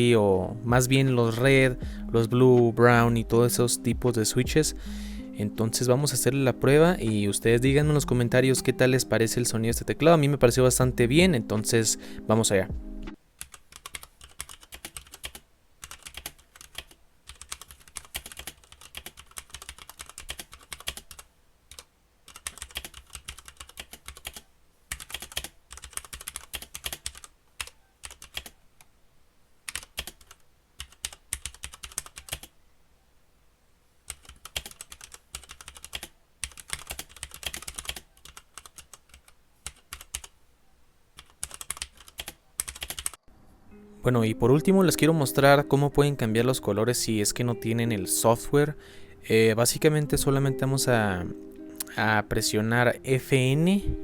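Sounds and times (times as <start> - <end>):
mechanical keyboard typing: 13.4 - 28.6, 29.7 - 32.5, 34.1 - 40.3, 41.2 - 43.2.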